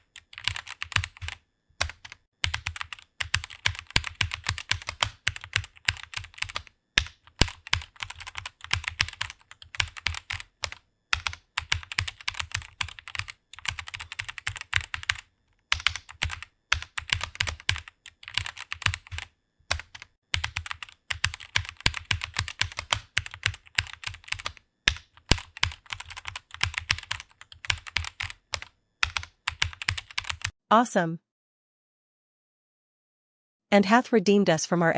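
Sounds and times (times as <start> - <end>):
typing on computer keyboard: 0.0 - 30.6.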